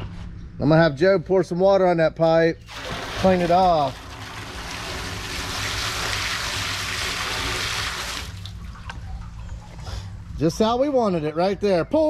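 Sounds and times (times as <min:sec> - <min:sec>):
water splashing onto pipe: 0:02.7 - 0:09.2.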